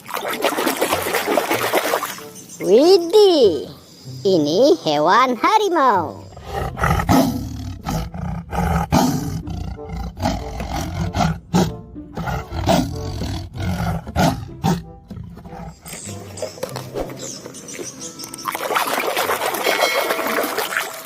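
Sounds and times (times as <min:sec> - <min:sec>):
background music: 0:00.0 - 0:21.0
tiger roaring: 0:06.3 - 0:15.9.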